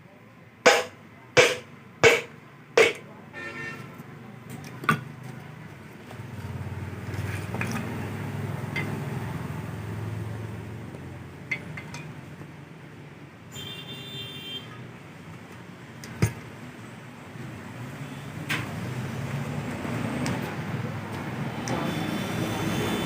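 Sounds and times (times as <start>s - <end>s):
sharp knock: 0.7s - 3.0s.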